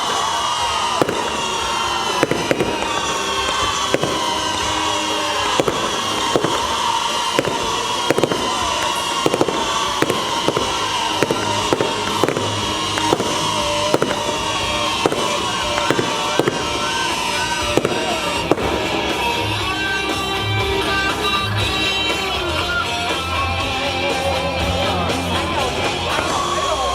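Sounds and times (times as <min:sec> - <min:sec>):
fireworks popping: 0:00.0 - 0:26.9
music playing: 0:00.0 - 0:26.9.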